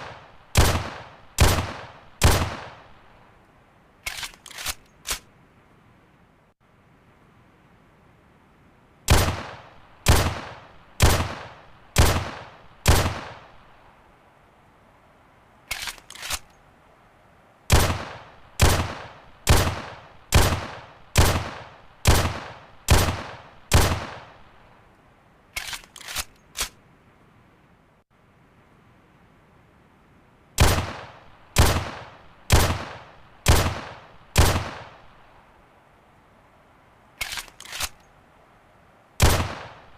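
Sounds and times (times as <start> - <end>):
pistol shots with echo: 0.0 - 2.9, 9.1 - 13.6, 17.7 - 24.4, 30.6 - 35.1, 39.2 - 39.9.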